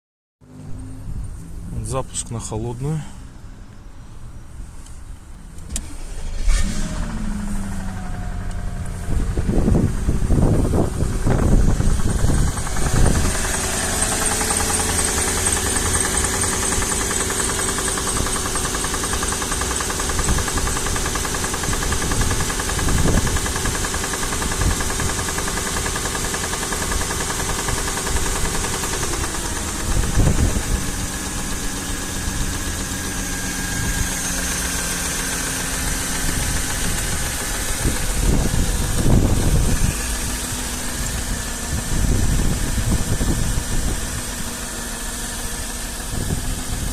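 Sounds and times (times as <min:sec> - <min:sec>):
car engine idling with knock: 0:06.8 - 0:46.9.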